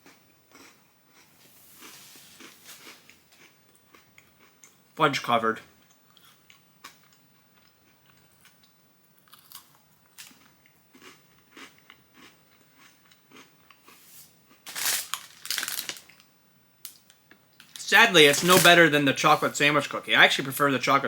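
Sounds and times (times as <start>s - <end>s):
crunchy cookie chewing: 0.0s - 4.8s, 5.8s - 16.3s.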